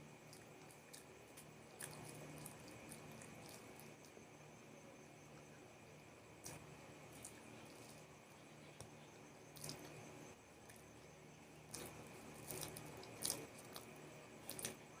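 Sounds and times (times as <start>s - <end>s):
person chewing fried snacks: 11.7s - 14.8s.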